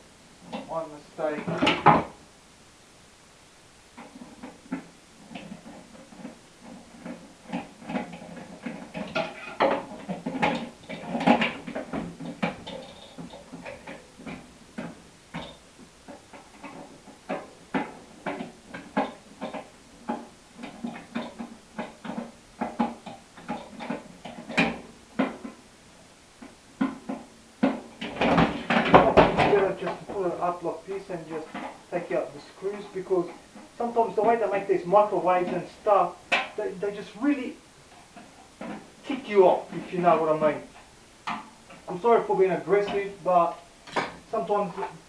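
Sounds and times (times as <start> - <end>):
metal parts clanking and rattling: 4.0 - 25.6, 27.0 - 30.3.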